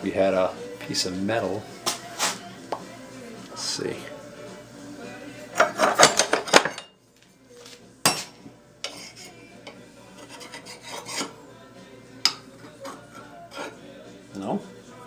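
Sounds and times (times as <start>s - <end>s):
stick scraping across metal: 8.8s - 9.4s, 10.1s - 11.4s, 12.6s - 13.8s.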